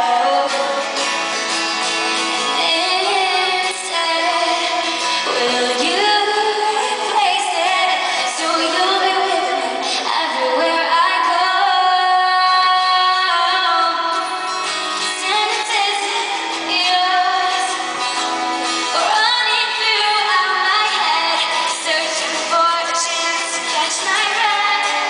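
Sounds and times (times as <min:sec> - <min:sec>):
woman singing pop ballad: 0:00.0 - 0:01.1, 0:02.4 - 0:25.0.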